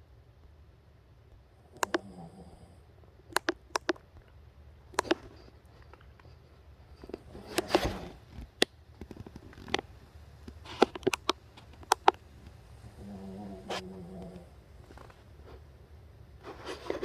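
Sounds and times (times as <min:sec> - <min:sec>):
dog breathing: 0:01.6 - 0:03.0, 0:07.0 - 0:08.3, 0:12.3 - 0:15.7
dog snoring: 0:01.6 - 0:03.0, 0:07.1 - 0:08.3, 0:12.5 - 0:15.6
sharp clicks and ticks: 0:01.8 - 0:02.2, 0:03.3 - 0:04.4, 0:05.0 - 0:05.3, 0:10.5 - 0:12.2.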